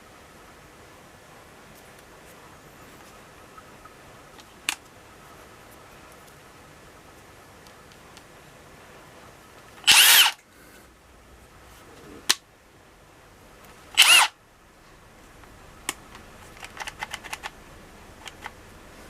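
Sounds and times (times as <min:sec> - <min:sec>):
impact wrench motor spinning: 0:09.8 - 0:10.4, 0:14.0 - 0:14.3.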